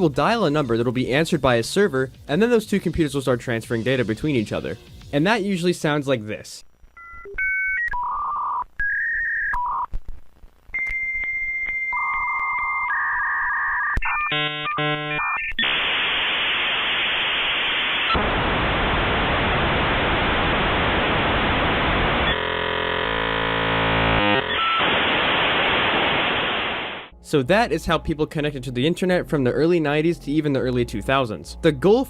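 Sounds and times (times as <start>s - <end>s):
modem buzzing: 8.4s - 27.2s
modem beeping tones: 10.8s - 15.7s, 24.4s - 25.0s
modem warbling: 10.8s - 27.1s
modem harsh hiss: 14.3s - 27.1s.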